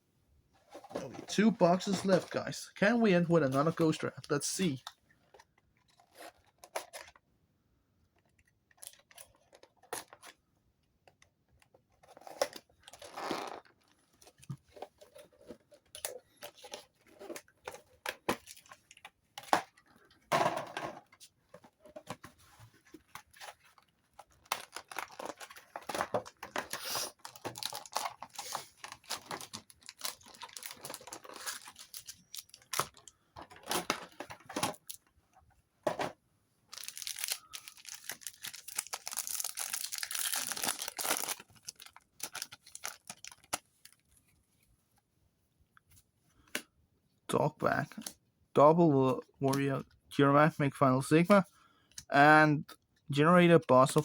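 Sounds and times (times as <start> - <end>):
packaging tearing and crinkling: 24.2 - 34.0, 36.7 - 44.0.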